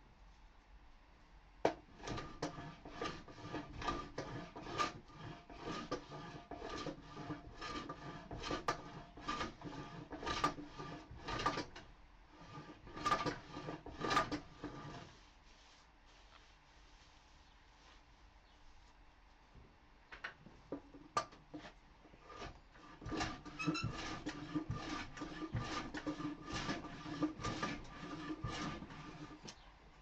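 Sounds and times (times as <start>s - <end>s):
hand plane strokes on wood: 2.0s - 11.8s, 12.4s - 16.4s, 21.5s - 29.6s.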